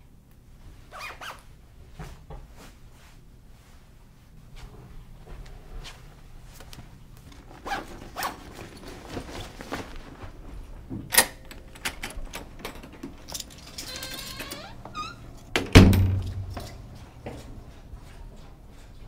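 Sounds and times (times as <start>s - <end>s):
heavy thunk with low ring: 15.7s - 16.6s.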